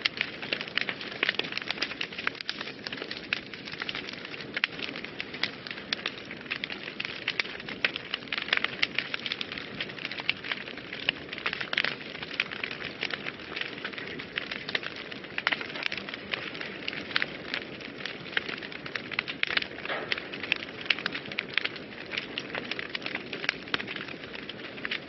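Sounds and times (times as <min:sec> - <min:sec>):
wood fire crackling and popping: 0:00.0 - 0:25.0.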